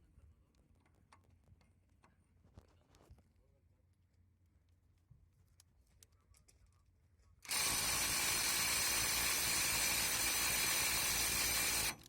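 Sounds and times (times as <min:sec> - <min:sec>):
cordless impact wrench hammering: 0:07.5 - 0:12.0.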